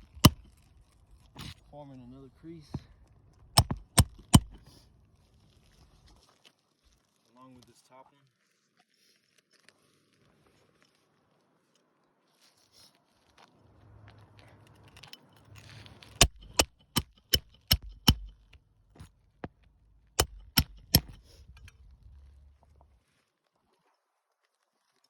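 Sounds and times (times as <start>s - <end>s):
hammer striking nails: 0.0s - 0.5s, 3.6s - 4.6s, 16.2s - 18.5s, 20.2s - 21.7s
faint rustling of shingles: 0.0s - 25.0s.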